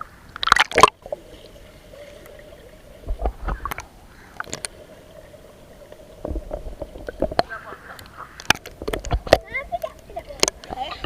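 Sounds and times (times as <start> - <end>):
faint underwater hum: 0.0 - 11.0
muffled splashes and knocks: 3.0 - 4.8, 5.9 - 11.0.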